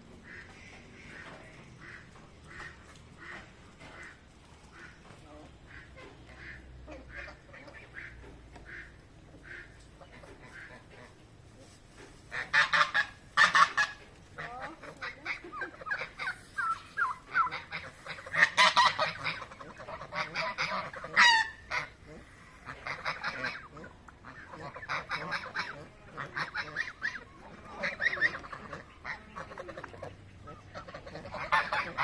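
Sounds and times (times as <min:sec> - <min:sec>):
geese honking: 0:00.0 - 0:32.0.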